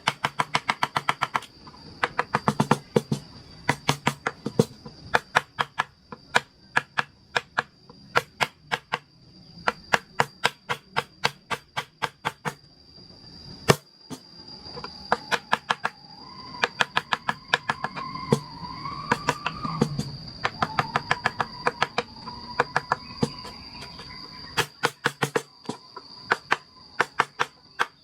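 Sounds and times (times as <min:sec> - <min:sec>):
mallet tapping chisel: 0:16.6 - 0:18.4.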